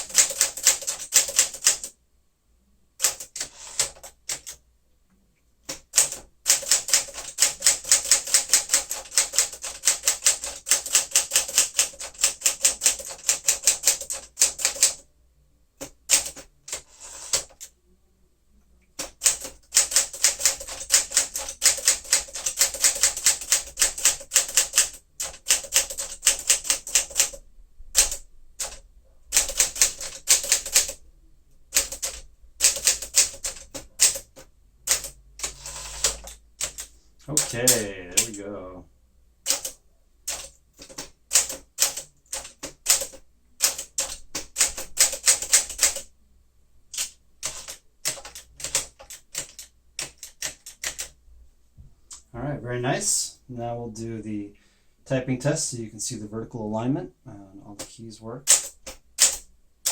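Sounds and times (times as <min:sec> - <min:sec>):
manual typewriter typing: 0:00.0 - 0:01.9, 0:03.0 - 0:04.6, 0:05.7 - 0:15.0, 0:15.8 - 0:17.7, 0:19.0 - 0:27.4, 0:28.0 - 0:31.0, 0:31.7 - 0:38.4, 0:39.4 - 0:46.1, 0:46.9 - 0:51.2, 0:57.8 - 0:59.9.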